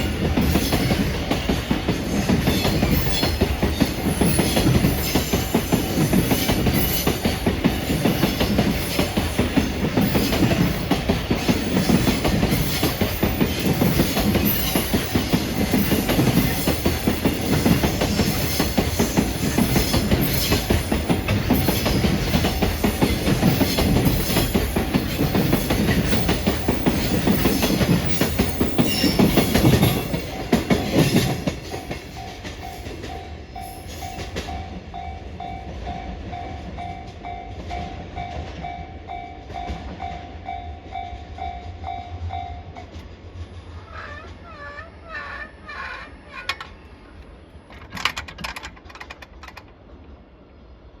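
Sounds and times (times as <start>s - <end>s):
crossing warning bell ringing: 0.0s - 18.8s
wheels clattering over rail joints: 0.0s - 33.2s, 46.2s - 49.9s
freight train rolling: 0.0s - 51.0s.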